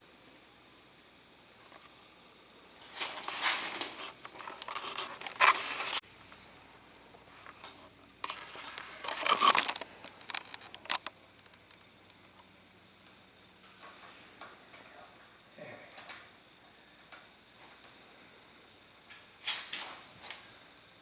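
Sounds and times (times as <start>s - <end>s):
rustling of parts: 2.8s - 6.4s, 7.3s - 11.9s.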